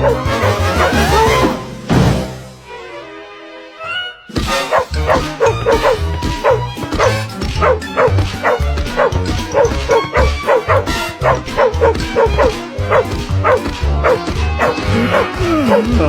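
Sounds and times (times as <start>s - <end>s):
dog barking: 0.0s - 1.4s, 4.6s - 15.8s
fast cartoon chase music: 0.0s - 3.1s, 4.3s - 16.0s.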